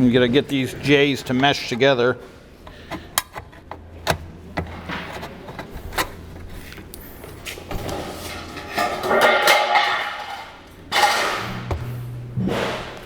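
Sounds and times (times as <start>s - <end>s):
sheet metal scraping: 7.5s - 13.0s.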